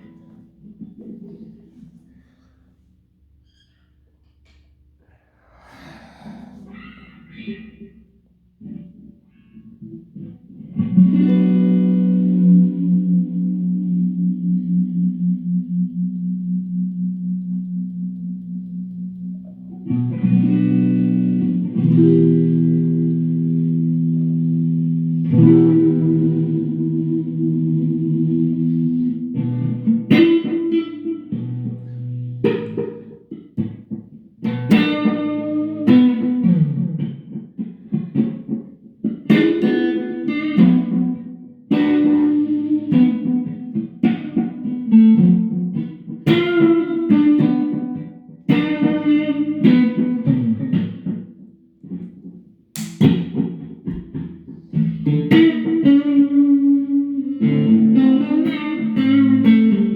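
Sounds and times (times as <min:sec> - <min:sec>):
electric guitar bluesy chords: 0:09.8 - 0:59.9.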